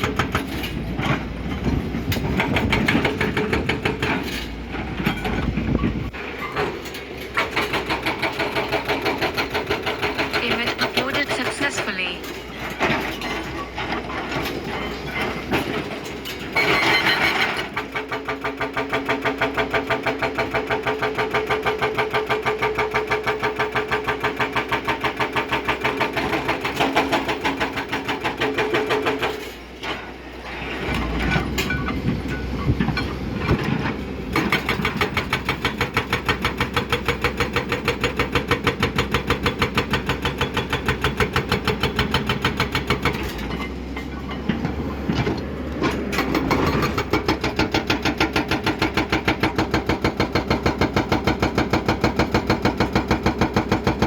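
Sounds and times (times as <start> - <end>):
hydraulic breaker hammering: 33.5 - 43.5, 45.9 - 54.0.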